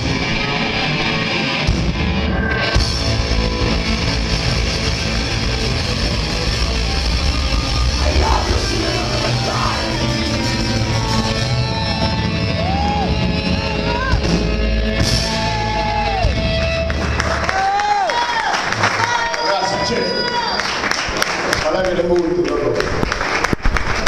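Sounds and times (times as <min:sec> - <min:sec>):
distorted electric guitars: 0:00.0 - 0:17.3
bass guitar: 0:00.0 - 0:17.9
drums: 0:00.0 - 0:18.8
shouted vocals: 0:07.9 - 0:11.3.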